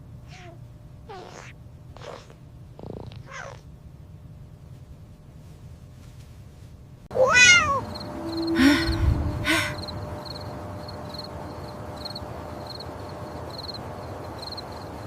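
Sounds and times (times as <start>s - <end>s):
cat meowing: 0.3s - 1.6s, 3.2s - 3.6s, 7.2s - 7.9s
crickets chirping: 7.4s - 15.0s.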